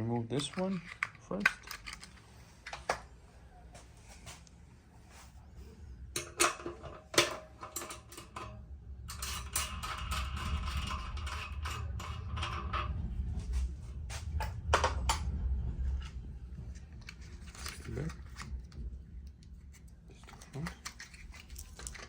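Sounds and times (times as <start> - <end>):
scratchy handling noise: 0.0 - 3.2, 9.4 - 22.0
metal clicks and knocks: 6.2 - 13.0.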